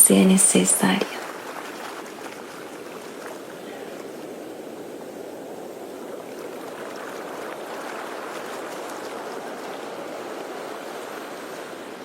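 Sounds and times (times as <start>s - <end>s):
sea waves washing in: 0.0s - 12.0s.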